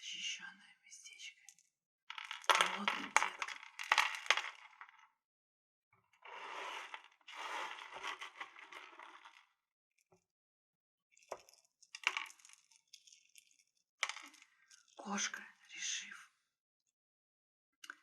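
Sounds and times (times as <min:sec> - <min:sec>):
crystals clinking and rattling: 0:01.5 - 0:05.1, 0:06.8 - 0:09.4, 0:11.2 - 0:15.5.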